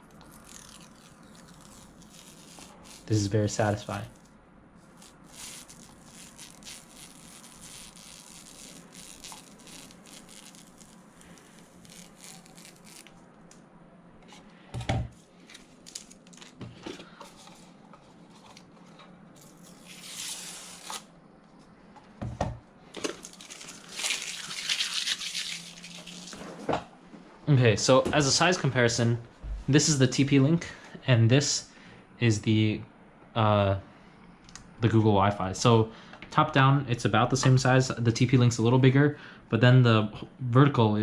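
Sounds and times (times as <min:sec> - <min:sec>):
packaging rustling and tearing: 0:00.0 - 0:04.3, 0:04.9 - 0:13.2, 0:15.4 - 0:16.6, 0:19.4 - 0:21.1, 0:23.0 - 0:26.6.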